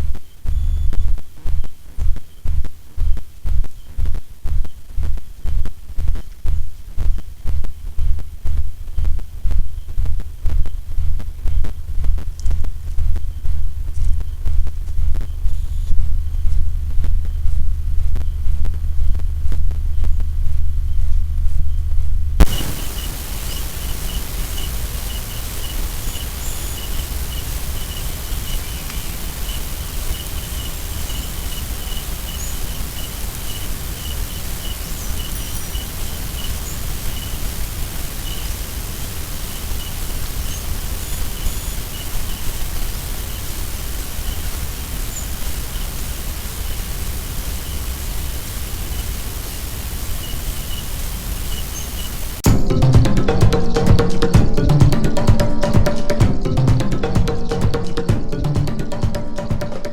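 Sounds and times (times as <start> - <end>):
high insect chirp: 22.4 - 59.6
outdoor hiss: 22.4 - 59.9.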